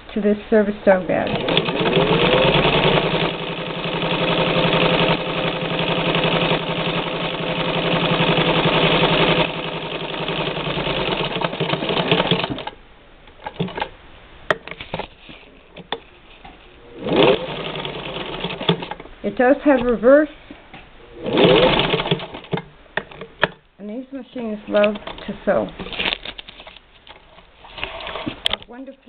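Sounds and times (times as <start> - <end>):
sewing machine clicks: 1.2 - 12.8, 17.0 - 19.0
sewing machine running: 1.2 - 12.8, 16.8 - 19.0, 21.2 - 22.6.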